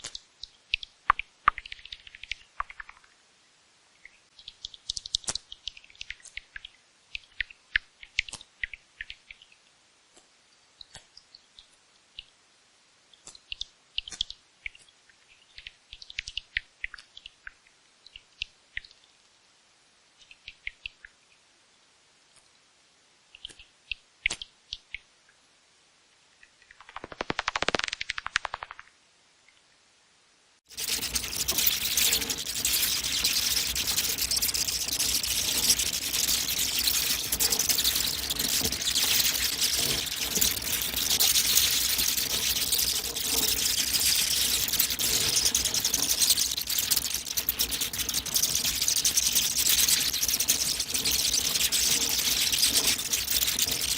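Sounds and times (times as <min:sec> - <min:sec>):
bats squeaking and clicking: 0:00.0 - 0:03.2, 0:04.0 - 0:09.5, 0:13.1 - 0:19.0, 0:26.4 - 0:28.9, 0:30.7 - 0:53.9.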